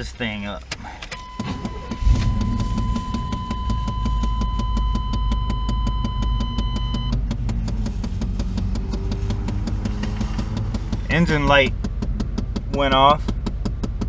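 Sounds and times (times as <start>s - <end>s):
car engine starting and idling: 0.0s - 14.0s
high electronic tone: 1.2s - 7.1s.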